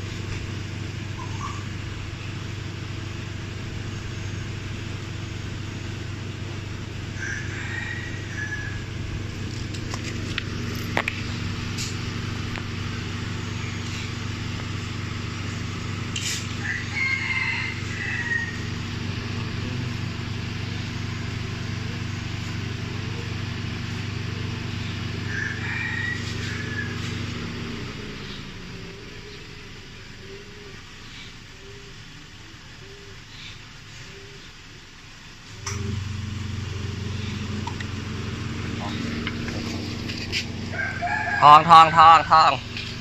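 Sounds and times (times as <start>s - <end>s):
car engine idling: 0.0s - 43.0s
rooster crowing: 7.1s - 9.0s, 16.5s - 19.0s, 25.0s - 28.0s, 40.5s - 42.6s.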